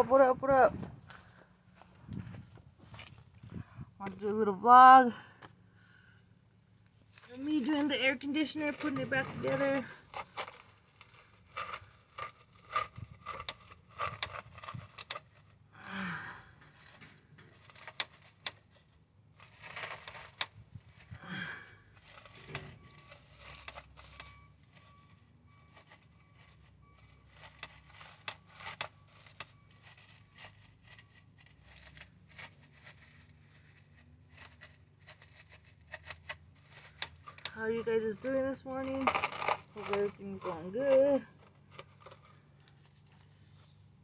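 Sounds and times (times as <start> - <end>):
rubbing scrapes: 7.2 - 15.5, 22.0 - 43.8
plastic parts clicking and tapping: 38.8 - 40.6.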